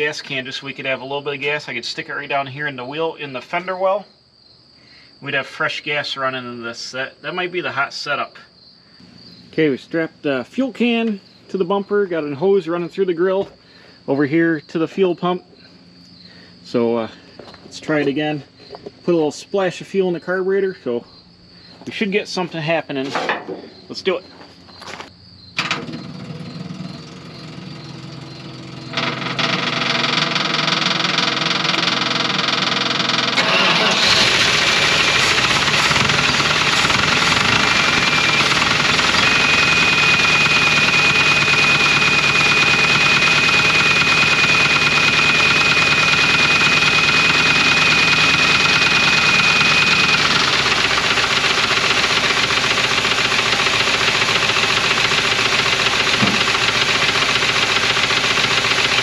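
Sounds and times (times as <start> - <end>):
truck engine cranking: 24.8 - 59.0
engine running with knocking: 25.6 - 59.0.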